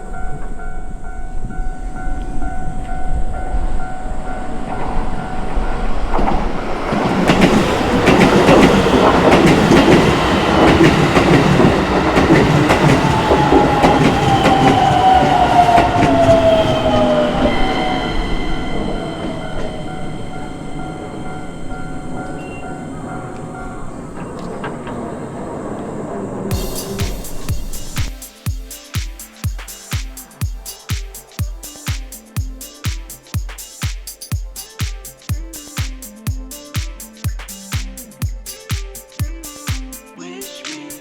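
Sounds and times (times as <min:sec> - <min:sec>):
falling whine from train: 0:00.0 - 0:28.2
level crossing warning bell: 0:00.0 - 0:28.4
train wheels clattering over rail joints: 0:05.8 - 0:17.2, 0:22.3 - 0:28.1.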